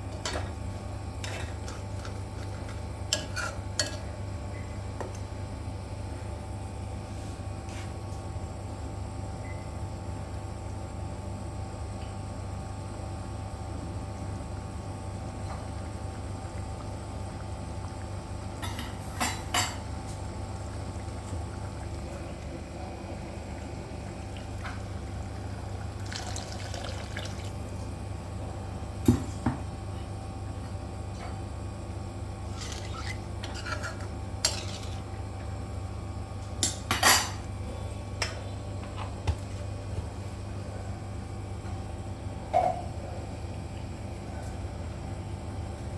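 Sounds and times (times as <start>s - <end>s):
steady low hum: 0.0s - 45.9s
metal utensils scraping a pot: 32.5s - 35.0s.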